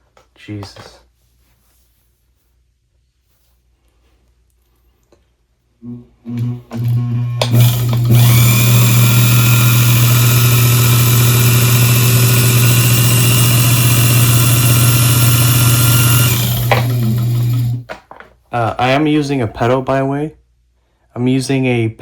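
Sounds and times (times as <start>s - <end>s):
lathe motor humming and whining: 6.3s - 17.8s.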